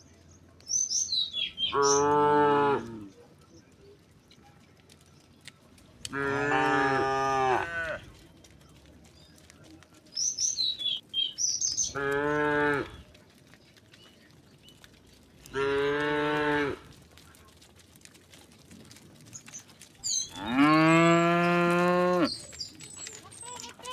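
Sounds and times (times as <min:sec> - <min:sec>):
cows mooing: 0:01.6 - 0:03.1, 0:06.1 - 0:08.1, 0:11.9 - 0:13.0, 0:15.4 - 0:17.0, 0:20.0 - 0:22.6.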